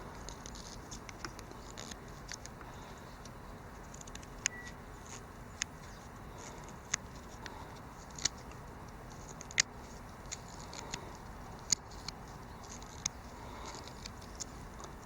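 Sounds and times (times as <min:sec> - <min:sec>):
blade carving wood clicks: 0:06.5 - 0:15.0.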